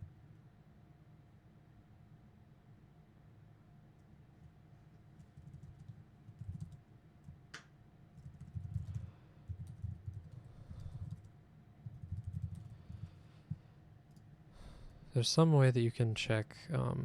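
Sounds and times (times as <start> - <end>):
sharp keyboard click: 5.2 - 6.8, 8.2 - 11.3, 11.9 - 12.7
typing on computer keyboard: 5.2 - 7.4, 8.2 - 11.3, 11.9 - 13.1.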